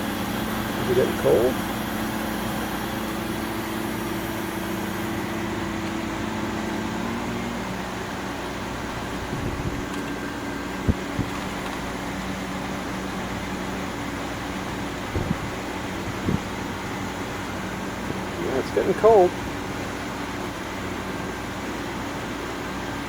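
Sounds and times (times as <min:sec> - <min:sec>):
air conditioner humming: 0:00.0 - 0:23.0.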